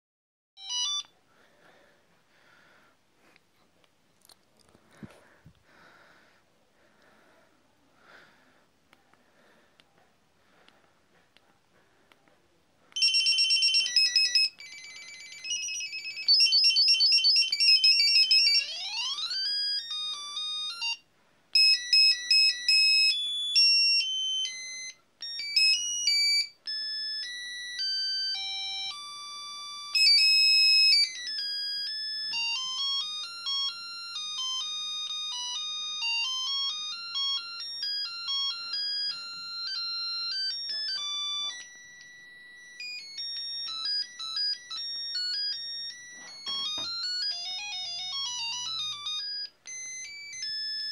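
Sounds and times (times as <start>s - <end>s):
phone trilling ringtone: 0.6s - 1.1s, 13.0s - 50.9s.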